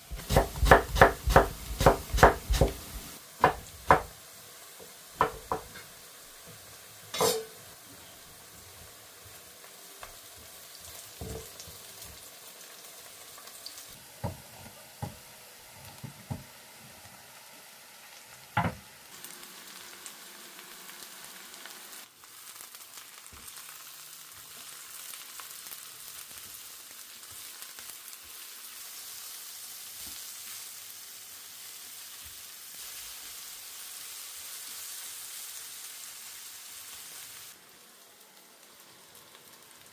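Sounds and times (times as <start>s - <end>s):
food sizzling in frying pan: 0.0s - 39.9s
utensil knocking against pan: 5.2s - 5.8s.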